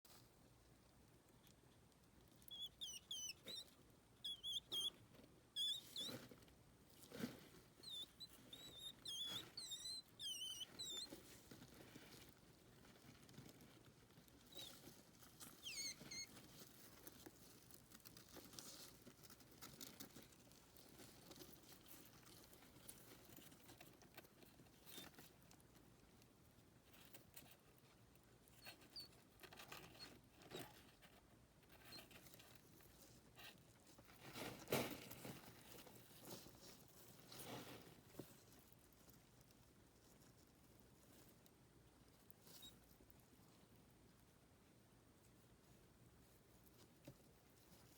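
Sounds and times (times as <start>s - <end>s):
faint rustling patter: 0.0s - 47.9s
hedgehog squeaky chirps: 2.4s - 5.0s, 5.6s - 6.2s, 7.8s - 11.2s, 15.4s - 16.4s.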